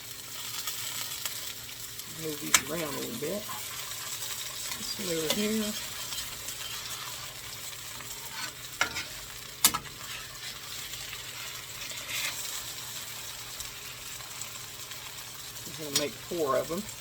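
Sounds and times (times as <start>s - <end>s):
meat sizzling on a griddle: 0.0s - 17.0s
utensil clicking against pan: 2.5s - 3.0s, 9.6s - 10.1s.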